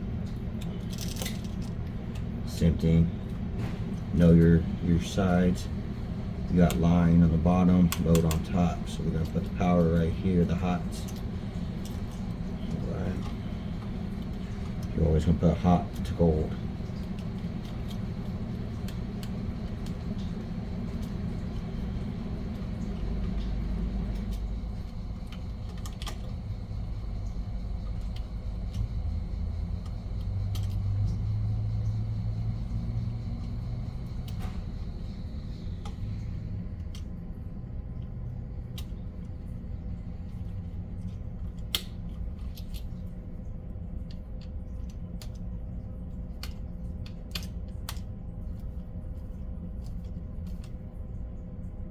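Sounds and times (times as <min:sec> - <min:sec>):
wires and tools clicking: 0:00.0 - 0:37.2, 0:40.2 - 0:43.2
machinery humming: 0:00.0 - 0:47.0.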